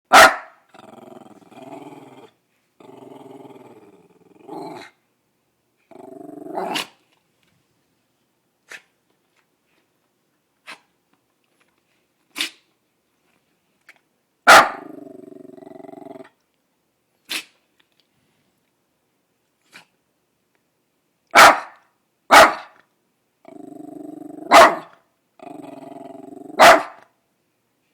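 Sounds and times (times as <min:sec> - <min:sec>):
dog growling and barking: 0:00.1 - 0:05.0, 0:05.9 - 0:07.0, 0:14.5 - 0:16.4, 0:23.4 - 0:27.1
dog sneezing: 0:10.6 - 0:10.9, 0:12.3 - 0:12.7, 0:17.3 - 0:17.6.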